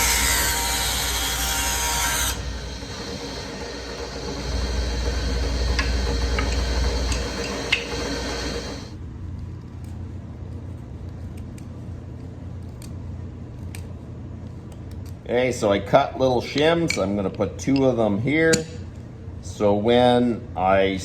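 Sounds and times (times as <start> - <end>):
table saw running: 0.0 - 8.9
low hum: 0.0 - 9.0.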